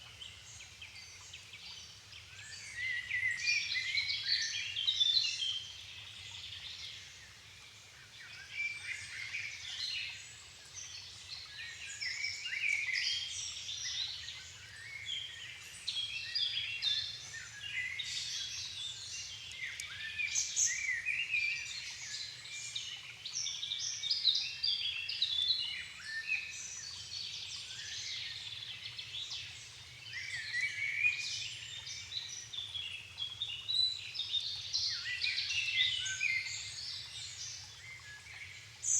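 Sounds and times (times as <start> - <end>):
chorus of songbirds singing: 8.3 - 38.9.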